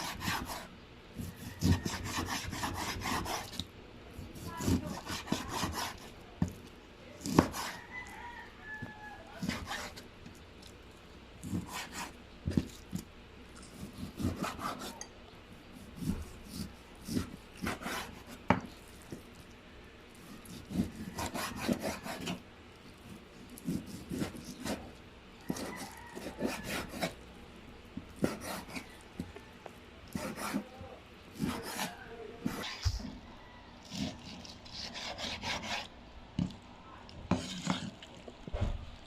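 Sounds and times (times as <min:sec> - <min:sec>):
knife cutting on wooden board: 0:00.0 - 0:06.6, 0:07.2 - 0:07.8, 0:09.4 - 0:10.0, 0:11.4 - 0:13.0, 0:13.6 - 0:15.1, 0:15.8 - 0:19.2, 0:20.2 - 0:22.4, 0:23.5 - 0:24.9, 0:25.5 - 0:27.2, 0:28.2 - 0:29.0, 0:30.1 - 0:30.7, 0:31.4 - 0:33.1, 0:33.8 - 0:35.9, 0:37.3 - 0:38.0
rooster crowing: 0:01.2 - 0:02.8, 0:07.4 - 0:09.8, 0:20.8 - 0:22.4, 0:25.4 - 0:27.2, 0:28.6 - 0:29.8, 0:31.6 - 0:34.5.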